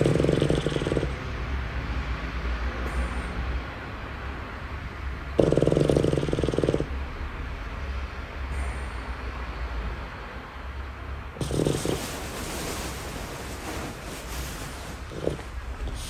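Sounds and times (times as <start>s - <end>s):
puppy snoring: 0.0s - 1.3s, 5.3s - 6.9s, 11.4s - 16.0s
faint breath: 8.5s - 9.5s.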